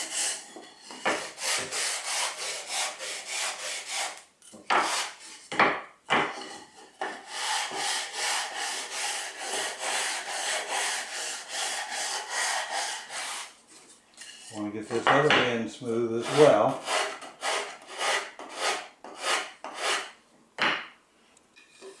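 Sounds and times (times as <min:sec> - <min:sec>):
sandpaper rubbing on wood: 0:01.1 - 0:04.2, 0:04.8 - 0:05.2, 0:07.2 - 0:13.5, 0:16.2 - 0:20.2.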